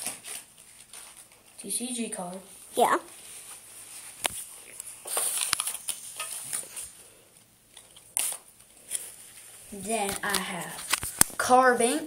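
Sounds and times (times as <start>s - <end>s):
trading cards rustling: 3.2s - 11.4s.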